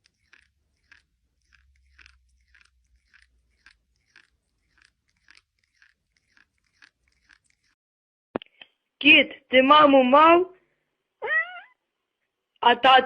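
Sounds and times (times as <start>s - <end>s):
faint crunchy chewing: 0.0s - 7.8s.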